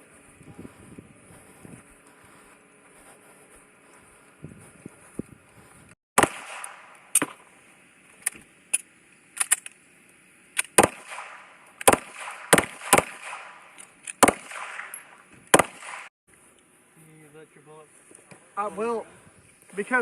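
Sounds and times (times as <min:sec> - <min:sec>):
pistol shots: 0:06.2 - 0:07.4, 0:10.6 - 0:16.1.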